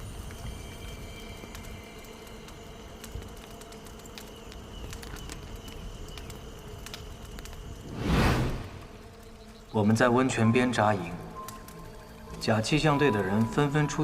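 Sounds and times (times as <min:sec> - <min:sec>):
insects droning: 0:00.0 - 0:14.0
faint ticks: 0:00.1 - 0:07.8.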